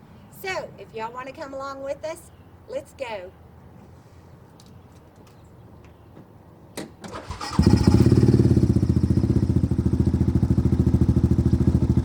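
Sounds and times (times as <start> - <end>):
engine starting and running: 7.0 - 9.7.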